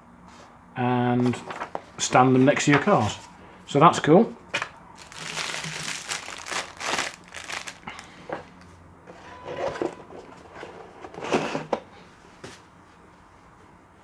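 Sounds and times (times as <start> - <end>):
plastic packaging crinkling: 5.0 - 8.2.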